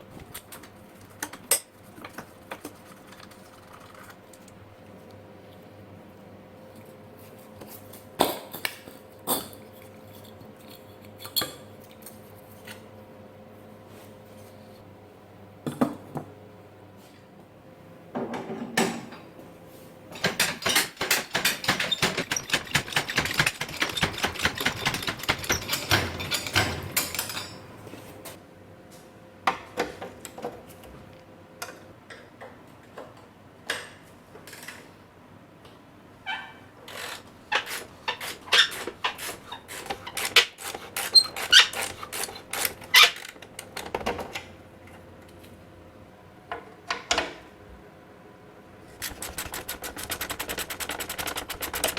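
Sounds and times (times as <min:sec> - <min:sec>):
hand tools clicking on metal: 0:20.2 - 0:27.7.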